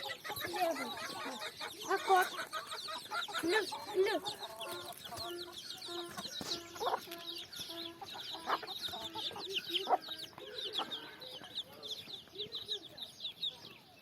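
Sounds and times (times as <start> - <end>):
hens clucking: 0.0 - 12.9.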